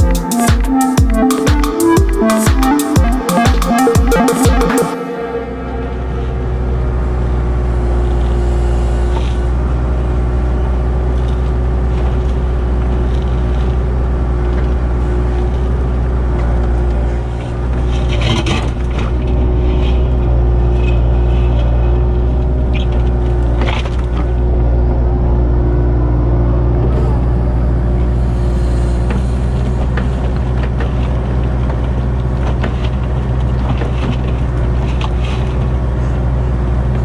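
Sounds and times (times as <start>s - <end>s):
excavator diesel engine running: 0.0s - 37.0s
excavator knocks and scrapes: 16.4s - 24.4s.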